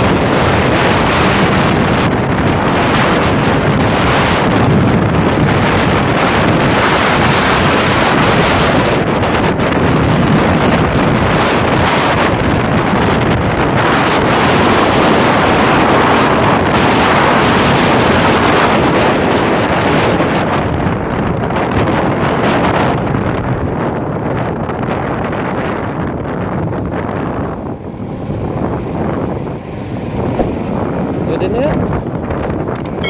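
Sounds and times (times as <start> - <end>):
wind rushing over microphone: 0.0 - 33.0.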